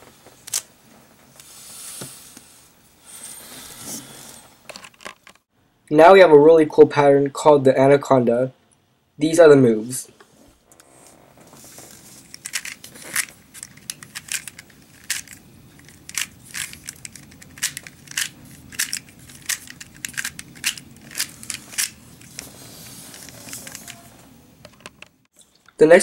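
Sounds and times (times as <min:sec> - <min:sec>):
plastic puzzle cube clicking: 0:12.4 - 0:22.4.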